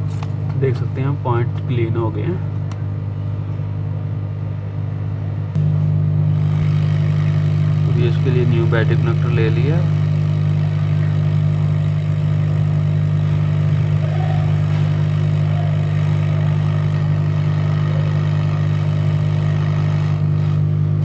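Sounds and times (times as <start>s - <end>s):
small motor humming: 5.6s - 21.0s.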